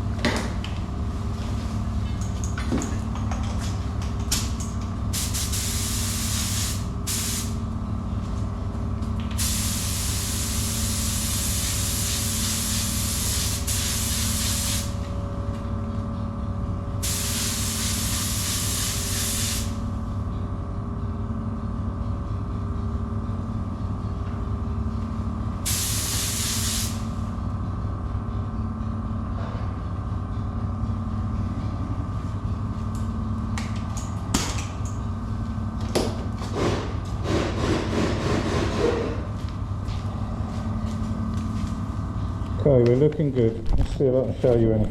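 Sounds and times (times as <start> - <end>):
low machine hum: 0.0 - 44.9
spray gun hissing: 5.2 - 7.6, 9.4 - 15.0, 17.0 - 19.8, 25.7 - 27.0.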